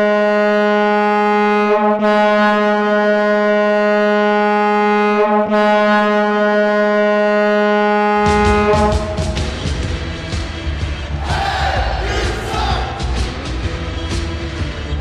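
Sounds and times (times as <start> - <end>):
goal horn blowing: 0.0 - 9.5.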